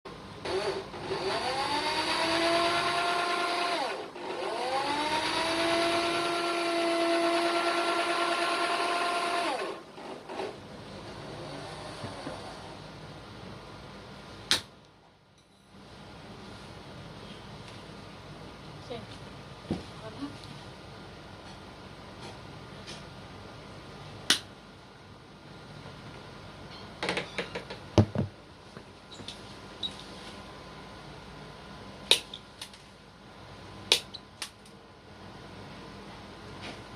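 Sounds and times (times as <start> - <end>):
electric drill whining: 0.4 - 10.6.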